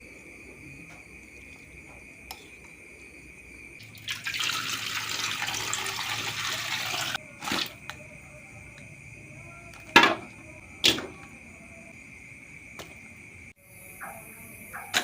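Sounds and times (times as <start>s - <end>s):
cricket trill: 0.0s - 15.0s
water running from a tap: 3.8s - 7.7s.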